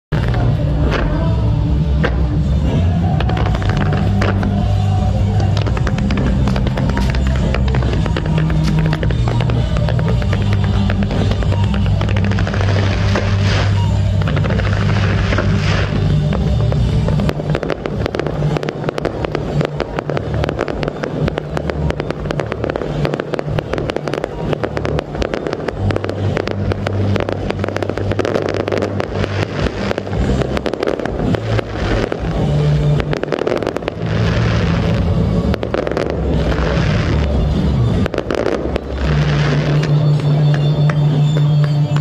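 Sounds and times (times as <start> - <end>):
fireworks crackling pops: 0.1 - 42.0
heavy low rumble: 0.1 - 42.0.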